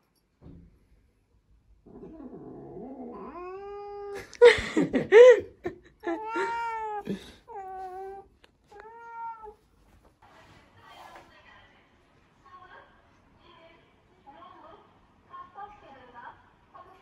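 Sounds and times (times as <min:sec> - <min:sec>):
cat growling and yowling: 0:01.8 - 0:04.4, 0:06.0 - 0:08.2.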